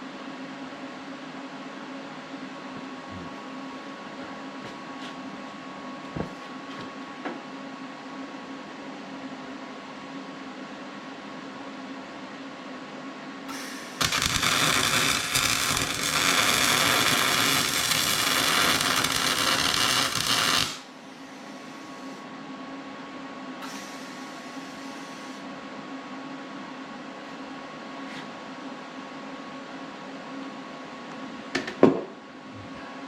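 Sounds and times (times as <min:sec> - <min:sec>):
electrical hum: 0:01.0 - 0:07.8, 0:13.5 - 0:23.0.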